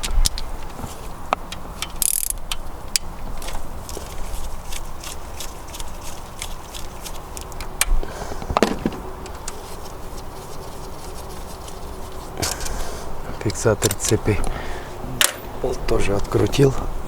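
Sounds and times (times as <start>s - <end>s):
metallic clicks of hand tools: 1.4s - 3.6s.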